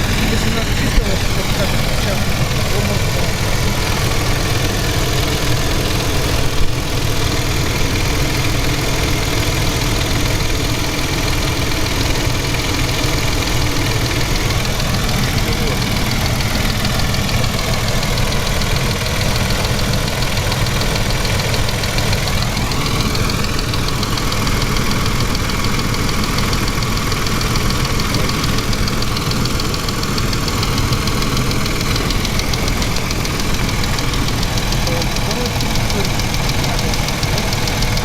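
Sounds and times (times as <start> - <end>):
car engine idling with a knock: 0.0 - 38.0.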